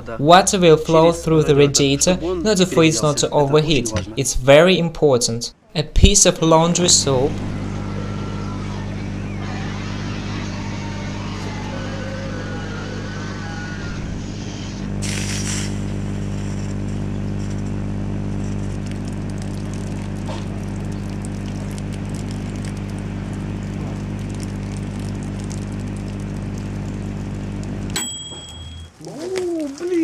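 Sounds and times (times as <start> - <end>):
loud mains hum: 0.0 - 4.6, 5.5 - 29.0
faint crackling: 7.1 - 28.0.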